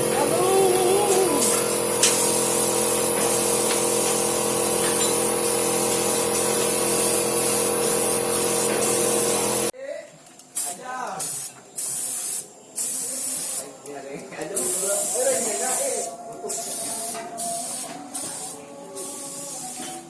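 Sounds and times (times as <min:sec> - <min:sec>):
machine motor drone: 0:00.0 - 0:09.7.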